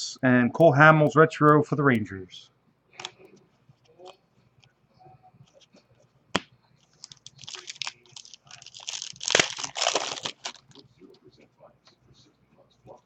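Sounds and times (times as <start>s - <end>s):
wrapper tearing and crinkling: 7.0s - 10.8s.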